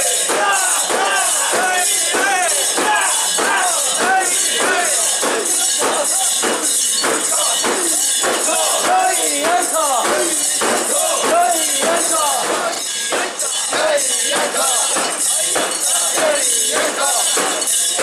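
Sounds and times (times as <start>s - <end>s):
crowd chanting in rhythm: 0.0s - 18.0s
metal rings jangling: 0.0s - 18.0s.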